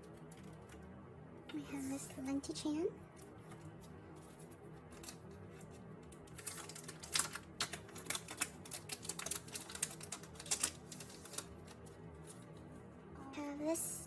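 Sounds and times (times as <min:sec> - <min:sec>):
crackling packaging being opened: 0:04.9 - 0:12.5.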